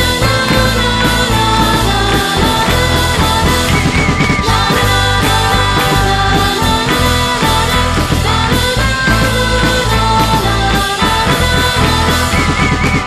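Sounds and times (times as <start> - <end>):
bass: 0.0 - 13.0
drums: 0.0 - 13.0
guitars: 0.0 - 13.0.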